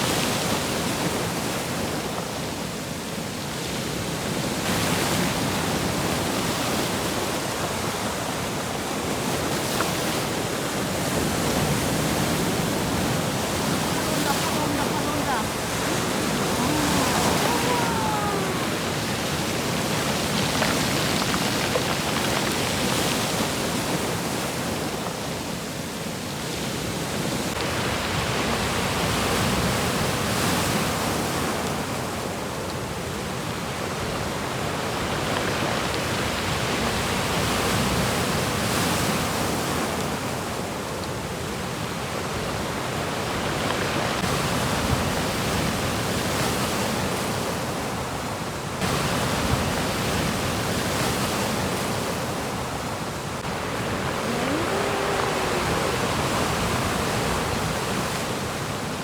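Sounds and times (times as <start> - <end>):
sea waves breaking: 4.3 - 25.5, 48.8 - 59.0.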